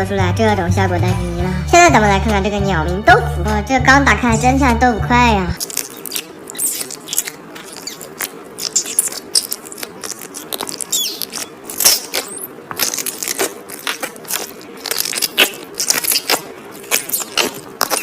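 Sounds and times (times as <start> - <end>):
slime squelching and squeaking: 5.6 - 18.0.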